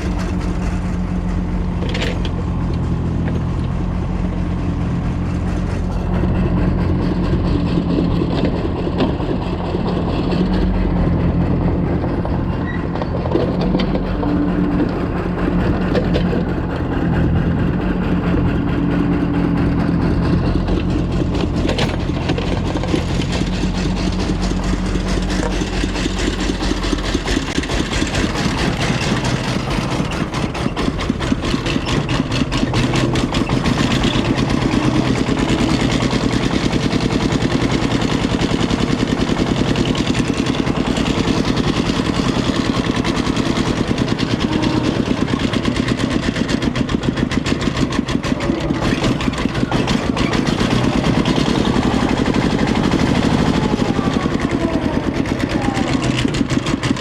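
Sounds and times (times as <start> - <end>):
diesel engines running: 0.0 - 57.0.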